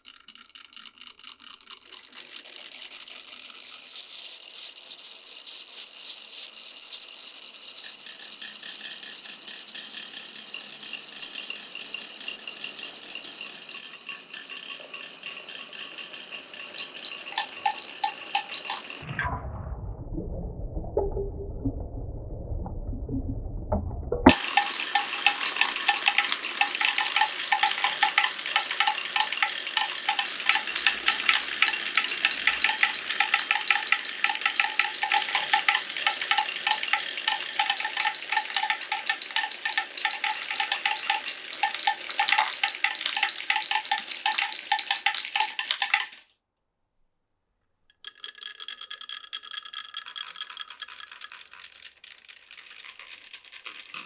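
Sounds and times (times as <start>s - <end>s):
rapid clatter of marbles: 0.0s - 19.1s, 24.3s - 46.2s, 48.0s - 54.0s
marbles rolling on wooden run: 0.3s - 19.1s, 24.3s - 46.2s, 48.1s - 54.0s.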